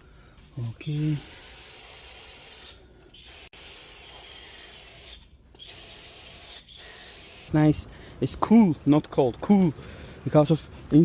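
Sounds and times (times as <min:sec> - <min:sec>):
aerosol spray hissing: 0:00.6 - 0:07.6.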